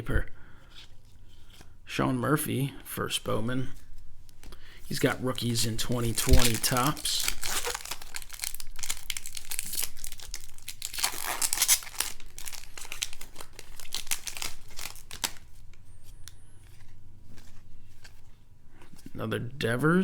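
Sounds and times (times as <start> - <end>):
foil wrapper crinkling and tearing: 4.4 - 15.8.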